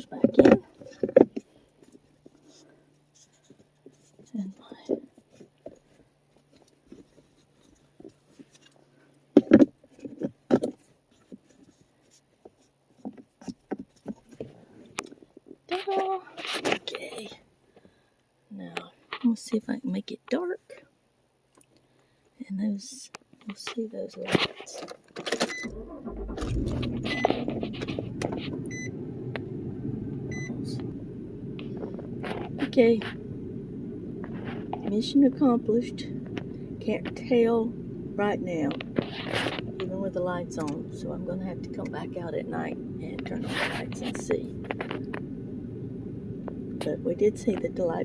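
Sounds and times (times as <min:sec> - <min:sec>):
dashboard warning chime: 0:25.5 - 0:27.4, 0:28.7 - 0:29.0, 0:30.3 - 0:30.8
car engine starting: 0:25.5 - 0:48.0
car engine idling: 0:25.6 - 0:48.0.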